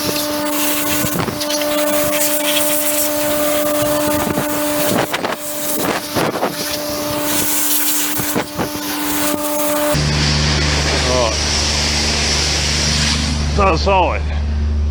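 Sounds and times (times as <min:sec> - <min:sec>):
air blow gun hissing blasts: 0:00.0 - 0:10.0
air compressor humming: 0:00.0 - 0:14.9.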